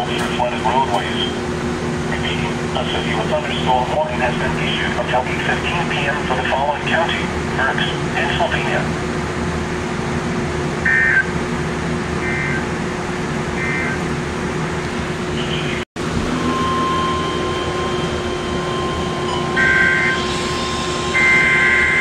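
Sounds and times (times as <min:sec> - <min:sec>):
steady hum and hiss: 0:00.0 - 0:22.0
two-tone digital data bursts: 0:18.1 - 0:20.4, 0:21.1 - 0:22.0.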